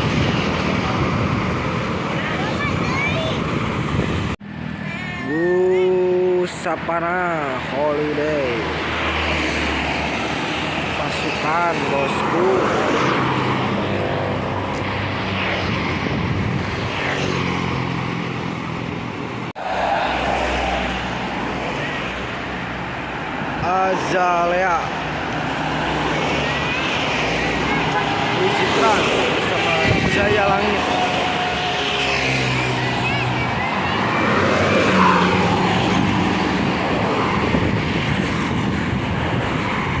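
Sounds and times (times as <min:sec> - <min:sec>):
road noise: 0:00.0 - 0:40.0
bus driving past: 0:17.2 - 0:23.5.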